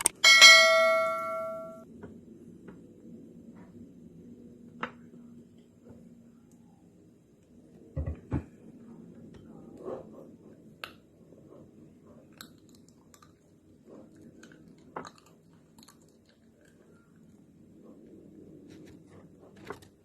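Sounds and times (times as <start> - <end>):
biting and chewing ice cream: 9.5 - 19.9.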